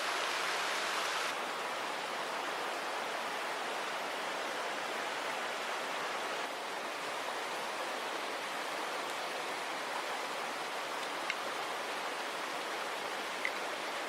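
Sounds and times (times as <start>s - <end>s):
river water rushing: 0.0s - 14.0s.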